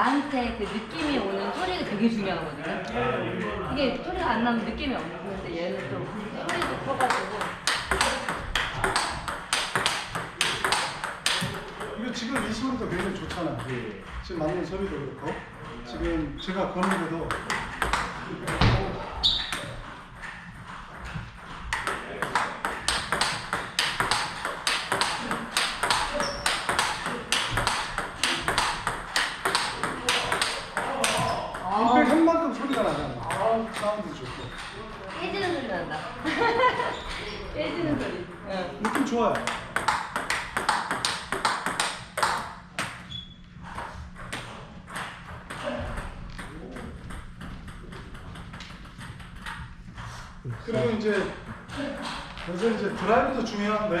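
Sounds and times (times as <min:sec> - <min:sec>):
table tennis ball hits: 0:06.4 - 0:14.7, 0:15.3 - 0:35.8, 0:38.8 - 0:43.1, 0:43.7 - 0:49.8.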